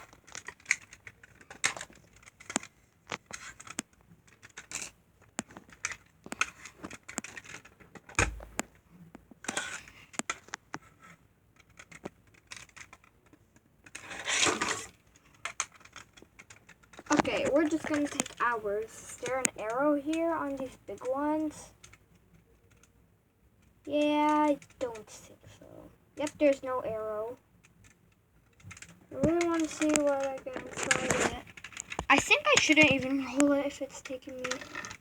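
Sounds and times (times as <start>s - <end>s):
plastic toy clicking and knocking: 0.0s - 25.3s, 26.2s - 35.0s
toy rolling on smooth floor: 11.8s - 21.8s, 28.5s - 35.0s.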